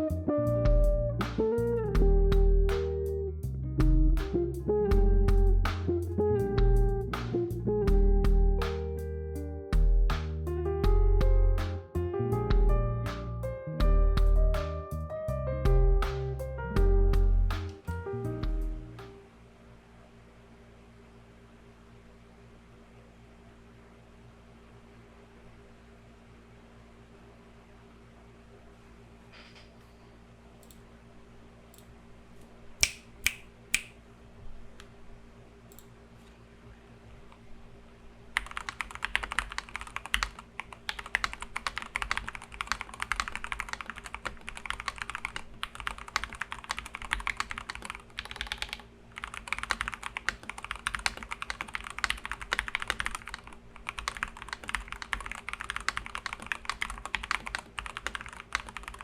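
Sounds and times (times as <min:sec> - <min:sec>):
typing on mechanical keyboard: 0:38.4 - 0:59.0.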